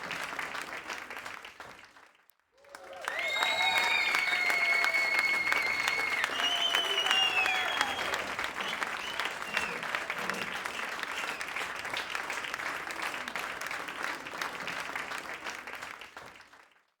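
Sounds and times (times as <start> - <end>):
crowd applauding and cheering: 0.0 - 17.0.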